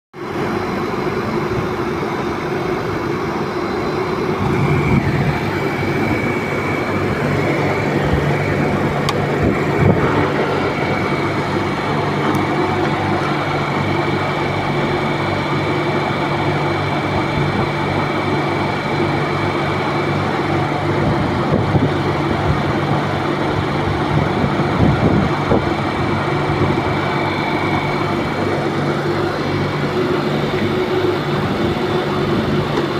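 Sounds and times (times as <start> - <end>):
low hum: 0.2 - 18.8
thin high whine: 0.2 - 20.8
refrigeration unit hum: 0.2 - 32.9.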